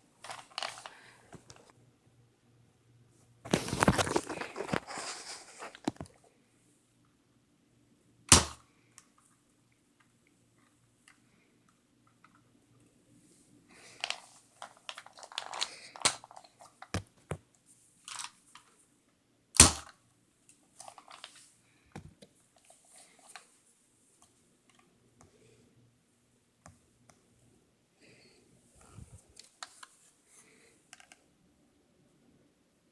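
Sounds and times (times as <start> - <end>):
dart blaster shot: 8.3 - 8.6, 19.6 - 19.9.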